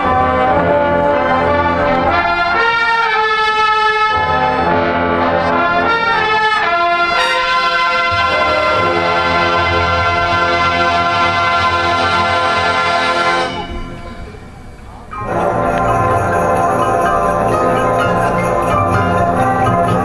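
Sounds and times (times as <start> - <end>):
brass playing held chords: 0.0 - 20.0.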